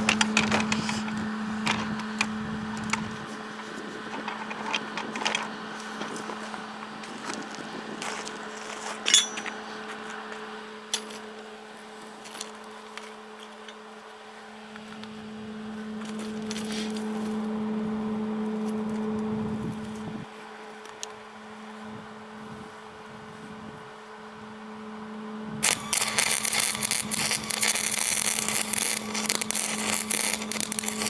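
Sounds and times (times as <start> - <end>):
mechanical hum: 0.0 - 31.0
sharp metallic clinks: 9.1 - 9.6.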